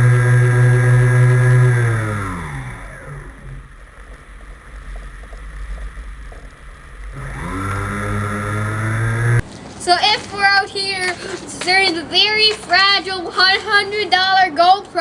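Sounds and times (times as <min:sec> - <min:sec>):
model airplane motor whine: 0:00.0 - 0:09.4.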